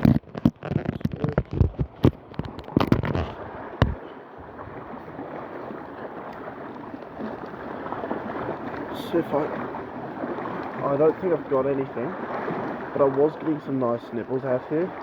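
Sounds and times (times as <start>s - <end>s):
bumps on microphone: 0.0s - 4.0s
sea water: 0.0s - 15.0s
wind: 0.0s - 15.0s.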